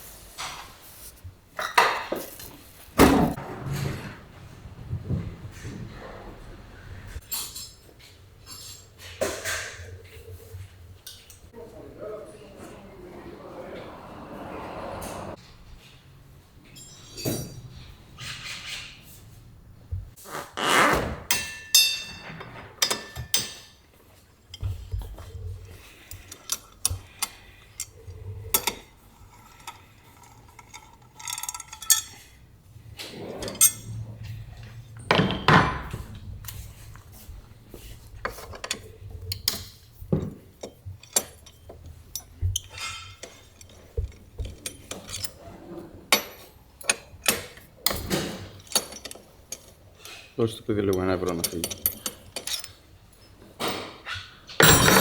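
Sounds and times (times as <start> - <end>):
metal tools clinking and clanking: 7.0 - 11.5, 16.6 - 19.4, 21.3 - 55.0.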